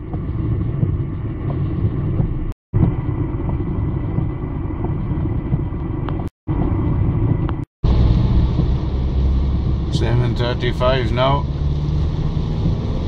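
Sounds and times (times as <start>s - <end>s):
car driving rumble from inside: 0.0s - 13.0s
heavy rain: 7.8s - 10.4s.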